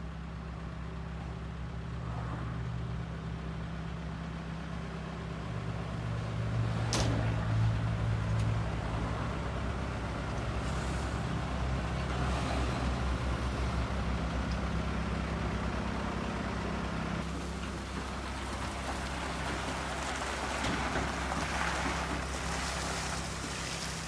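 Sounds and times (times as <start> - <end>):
heavy diesel engine running: 0.1 - 24.0.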